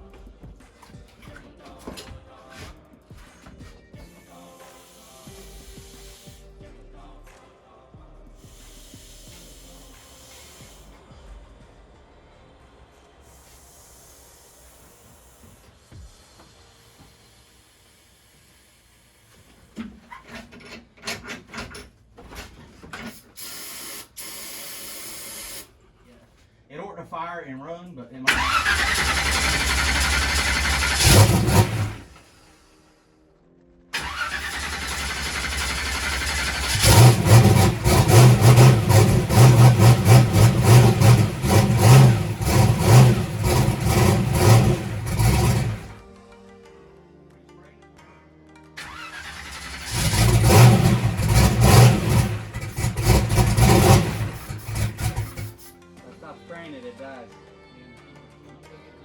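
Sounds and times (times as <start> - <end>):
engine cranking: 28.3 - 32.2, 34.0 - 46.0, 48.8 - 55.6
engine lumpy idle: 34.0 - 46.0, 49.4 - 55.5.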